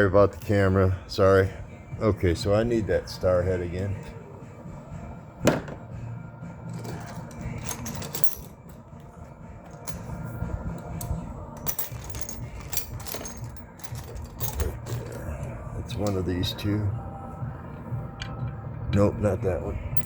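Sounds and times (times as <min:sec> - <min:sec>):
small metal tools clinking: 0:06.7 - 0:08.9, 0:09.6 - 0:16.2.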